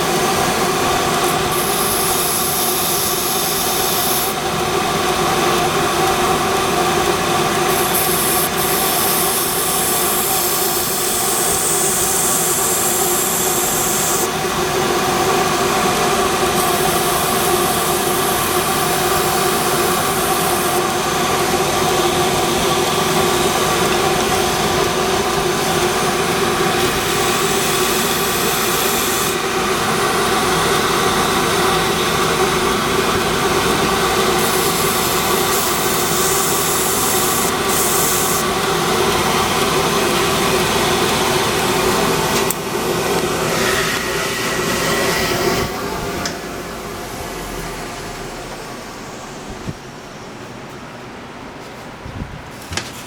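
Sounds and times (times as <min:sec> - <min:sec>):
belt grinder humming: 0:00.0 - 0:50.8
high grinding hiss of steel: 0:00.2 - 0:04.6, 0:07.7 - 0:20.9, 0:25.7 - 0:39.1.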